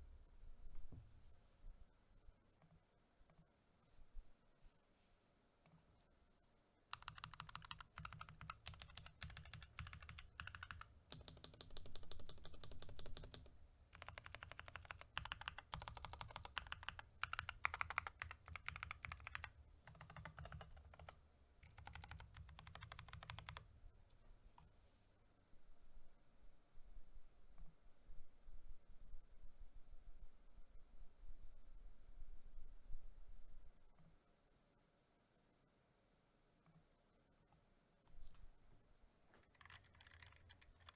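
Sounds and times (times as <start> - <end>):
mechanical keyboard typing: 6.9 - 23.7, 39.4 - 40.9.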